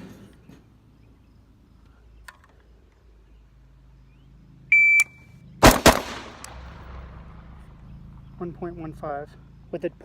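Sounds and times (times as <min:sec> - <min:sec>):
shot timer beep: 0:04.7 - 0:05.2
rifle shots with echo: 0:05.6 - 0:07.6.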